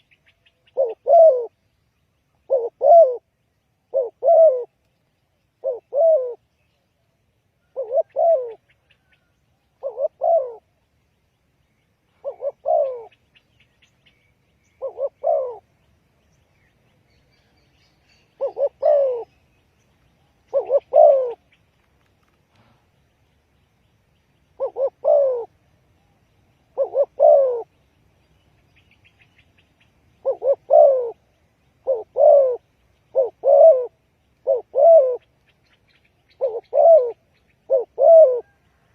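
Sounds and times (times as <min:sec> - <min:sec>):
dove cooing: 0:00.0 - 0:01.6, 0:02.4 - 0:04.8, 0:05.6 - 0:06.5, 0:07.6 - 0:10.8, 0:12.1 - 0:13.4, 0:14.7 - 0:15.7, 0:18.2 - 0:19.4, 0:20.4 - 0:21.6, 0:24.6 - 0:25.6, 0:26.7 - 0:27.8, 0:30.2 - 0:38.9.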